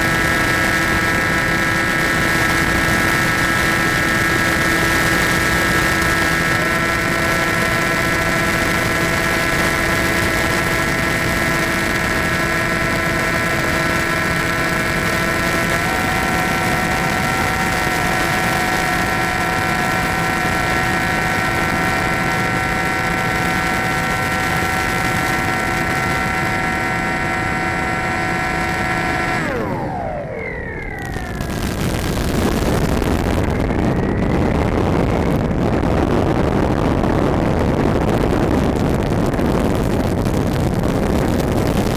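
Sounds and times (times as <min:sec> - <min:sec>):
model plane motor whine: 0:00.0 - 0:41.9
wind rushing: 0:29.7 - 0:41.9.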